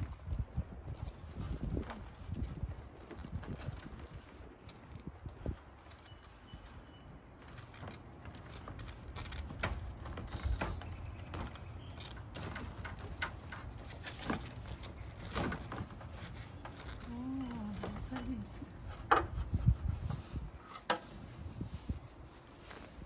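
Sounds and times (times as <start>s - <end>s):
clicks and knocks of installation work: 7.5s - 17.1s.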